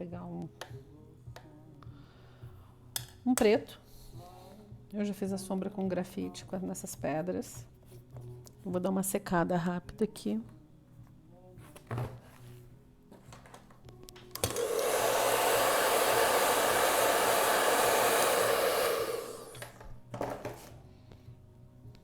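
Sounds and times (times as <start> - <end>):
hair dryer blowing: 14.4 - 19.8.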